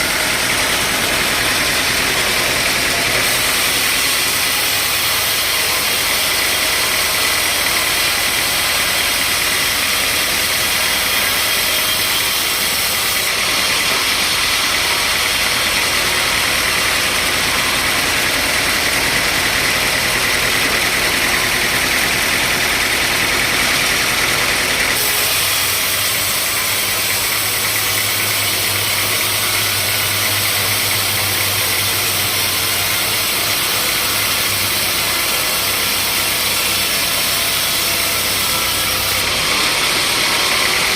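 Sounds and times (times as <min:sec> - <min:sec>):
sawmill machinery running: 0:00.0 - 0:40.9.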